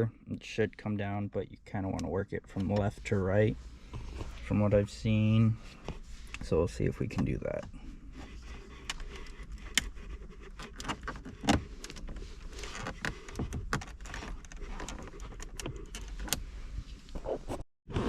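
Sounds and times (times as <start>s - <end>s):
plastic trim clicking and creaking: 10.6s - 16.4s.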